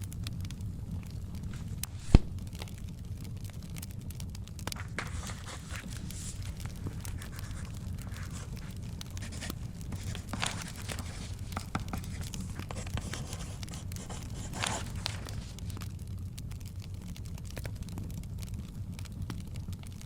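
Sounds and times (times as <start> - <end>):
fire crackling and popping: 0.0 - 20.0
paper rustling: 1.4 - 2.4, 4.7 - 15.8.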